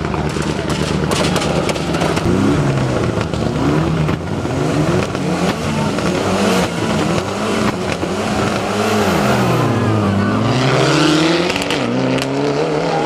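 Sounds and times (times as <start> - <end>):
car engine accelerating hard: 0.0 - 13.0.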